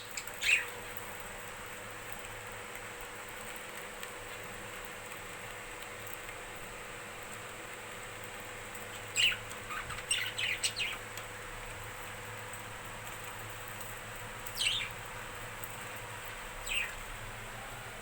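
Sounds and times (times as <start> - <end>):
budgerigars chirping: 0.0 - 0.8, 8.9 - 11.0, 14.6 - 15.0, 16.6 - 17.0.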